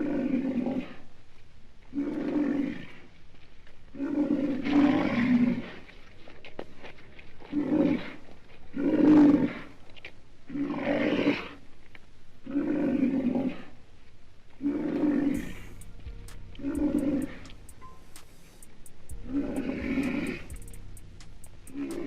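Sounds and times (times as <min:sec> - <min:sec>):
rhinoceros calling: 0:14.6 - 0:22.0.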